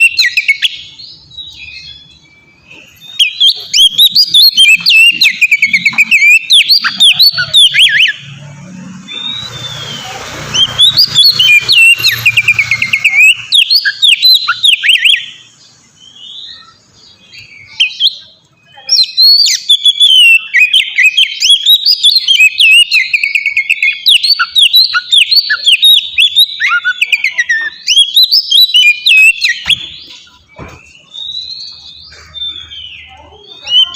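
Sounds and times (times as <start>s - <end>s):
bird whistling song: 0.0s - 33.9s.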